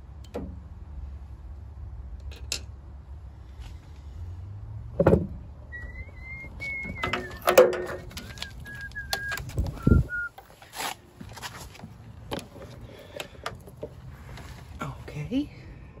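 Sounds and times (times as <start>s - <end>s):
whistled falling notes: 5.7s - 10.4s.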